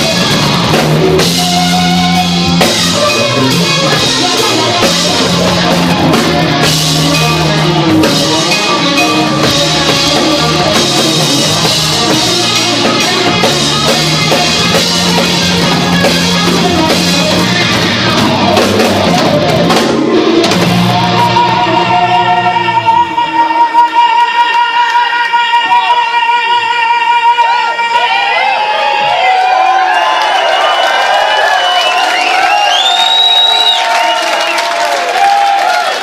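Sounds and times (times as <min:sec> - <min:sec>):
live rock band playing: 0:00.0 - 0:24.3.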